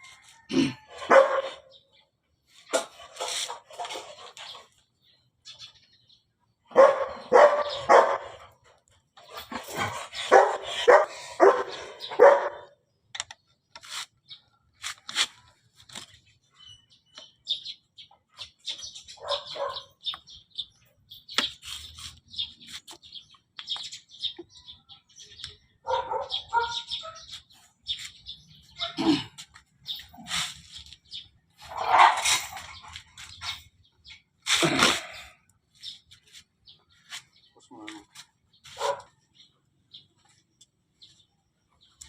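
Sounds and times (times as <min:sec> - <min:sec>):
birds chirping: 0:00.0 - 0:42.0
dog barking: 0:00.9 - 0:01.7, 0:06.7 - 0:08.5, 0:09.8 - 0:12.8, 0:19.2 - 0:20.0, 0:25.8 - 0:27.3, 0:28.8 - 0:29.2, 0:31.7 - 0:32.4, 0:38.8 - 0:39.2.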